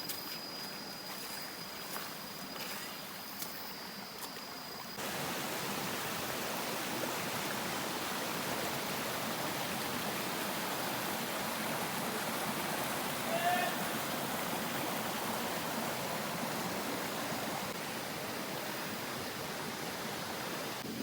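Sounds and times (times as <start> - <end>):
waterfall and river rushing: 5.0 - 21.0.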